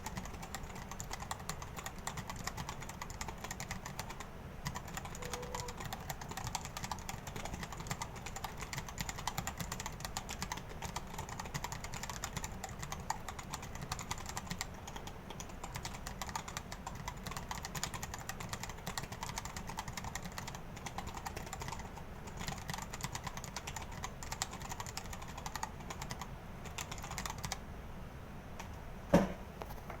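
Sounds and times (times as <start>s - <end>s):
mechanical keyboard typing: 0.0s - 27.6s
loud knock: 29.1s - 29.5s.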